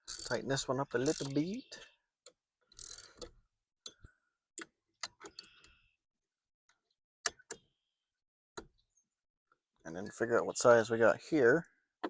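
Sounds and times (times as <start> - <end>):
socket ratchet clicking: 1.0 - 1.4.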